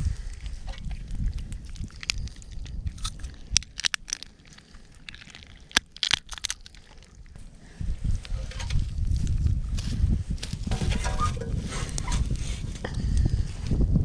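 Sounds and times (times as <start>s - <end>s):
campfire wood cracking: 0.0s - 13.3s
low rumble: 7.3s - 13.6s.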